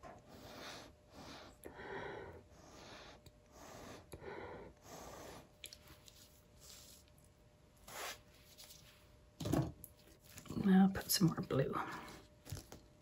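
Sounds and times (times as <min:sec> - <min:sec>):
person breathing: 0:00.0 - 0:05.6.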